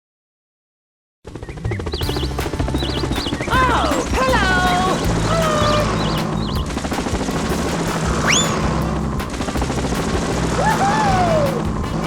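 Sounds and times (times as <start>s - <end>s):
background music: 2.0s - 12.0s
cartoon rising whistle: 8.2s - 8.6s.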